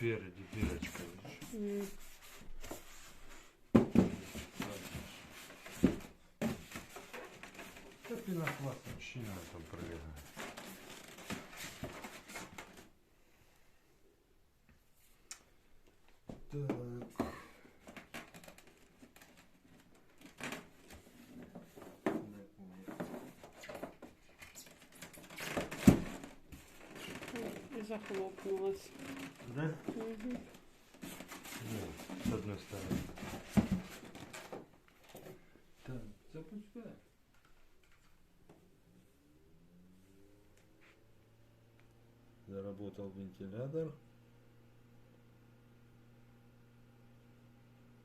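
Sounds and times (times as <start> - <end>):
scraping and rubbing: 0.4 - 12.9, 22.8 - 34.6.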